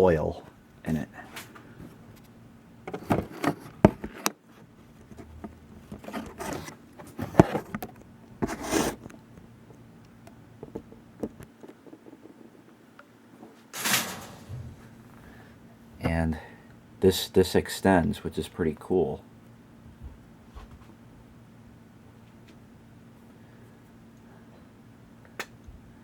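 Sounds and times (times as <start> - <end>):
rubbing scraping rustles: 2.9 - 7.8, 8.4 - 9.1.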